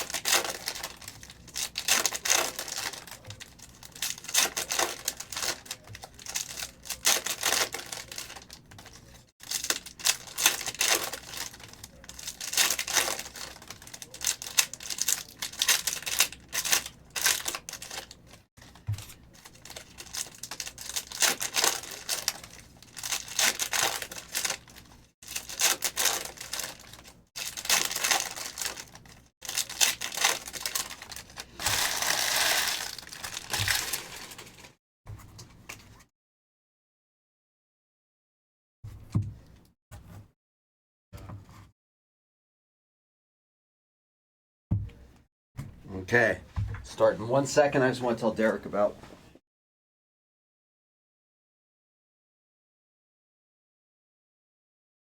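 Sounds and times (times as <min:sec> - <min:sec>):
foil wrappers tearing and crinkling: 0:00.0 - 0:34.8.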